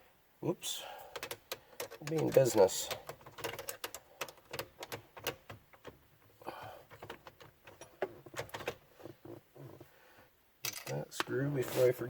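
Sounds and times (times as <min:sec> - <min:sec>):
hand tools clicking and rattling: 0:01.1 - 0:09.4.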